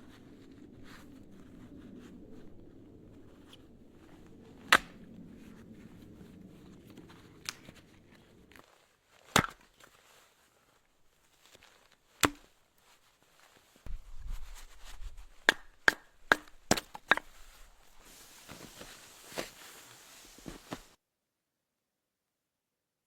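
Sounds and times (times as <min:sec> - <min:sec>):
axe chopping firewood: 0:04.7 - 0:05.0, 0:09.3 - 0:09.6, 0:12.2 - 0:12.4, 0:15.5 - 0:17.3.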